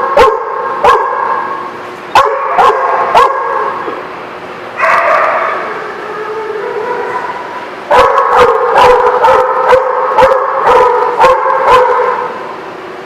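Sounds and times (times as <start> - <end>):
dog barking and yipping: 0.0 - 1.3, 2.2 - 3.8, 4.8 - 5.7, 7.9 - 12.3.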